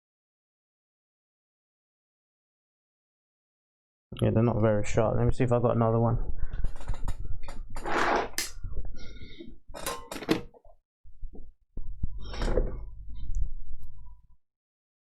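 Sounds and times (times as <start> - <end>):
tools knocking and rattling: 9.7 - 10.7.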